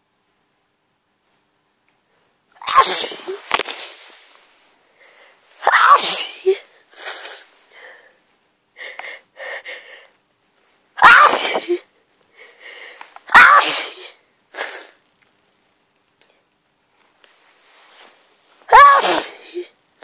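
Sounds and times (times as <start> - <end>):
person sneezing: 2.6 - 3.9, 5.6 - 7.5, 11.0 - 11.9, 13.3 - 15.0, 18.7 - 19.8
wheezy gasping breaths: 4.8 - 5.6, 6.2 - 8.2, 8.8 - 10.2, 11.5 - 15.0.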